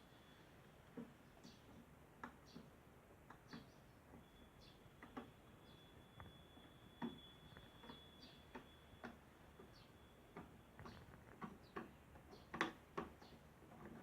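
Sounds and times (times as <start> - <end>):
faint high steady tone: 0.0 - 0.8, 4.1 - 11.1.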